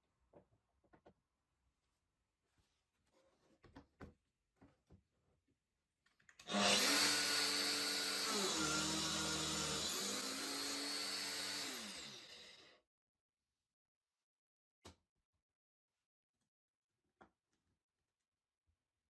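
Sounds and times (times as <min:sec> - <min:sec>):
angle grinder whining: 0:06.5 - 0:12.7.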